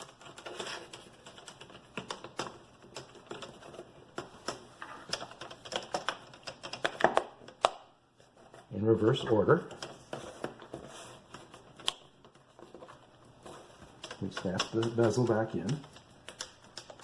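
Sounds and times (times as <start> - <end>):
plastic laptop parts clicking: 0.0 - 7.8, 13.8 - 17.0.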